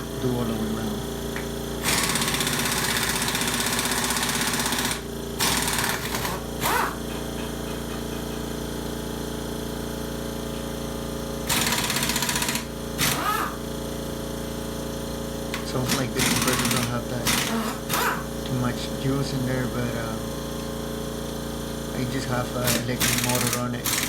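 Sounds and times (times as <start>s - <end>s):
air compressor humming: 0.0s - 24.0s
air wrench running: 0.0s - 24.0s.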